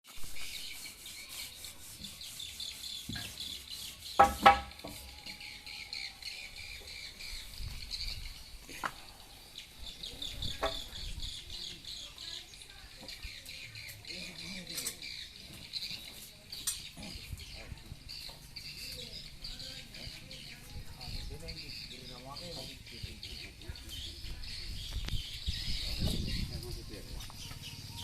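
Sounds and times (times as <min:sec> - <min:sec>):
sharp knocks: 0:04.2 - 0:05.0
high fast wildlife chirping: 0:16.9 - 0:28.0.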